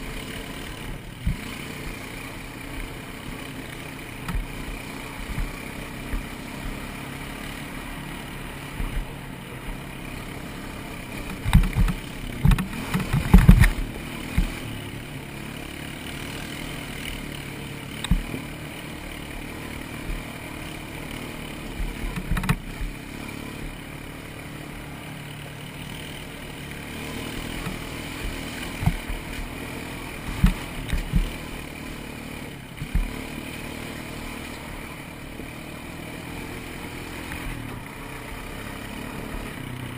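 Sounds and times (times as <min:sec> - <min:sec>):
quad engine running: 0:00.0 - 0:39.9
thumps and clatter over rough ground: 0:00.9 - 0:01.8, 0:04.1 - 0:06.9, 0:08.6 - 0:09.8, 0:11.1 - 0:15.0, 0:17.9 - 0:18.8, 0:19.4 - 0:23.1, 0:26.2 - 0:31.8, 0:32.5 - 0:33.4.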